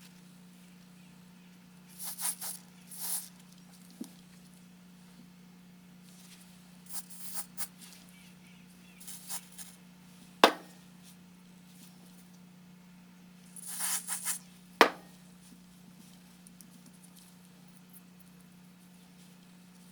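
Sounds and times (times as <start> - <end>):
sharp knocks: 10.4 - 10.7, 14.8 - 15.1.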